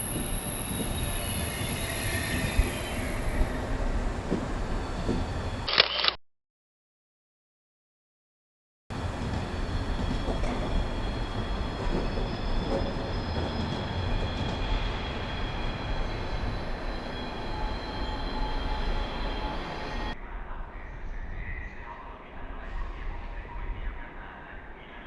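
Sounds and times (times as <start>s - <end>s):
high squealing tones: 0.0s - 3.8s
train rumbling: 0.0s - 5.7s, 8.9s - 25.0s.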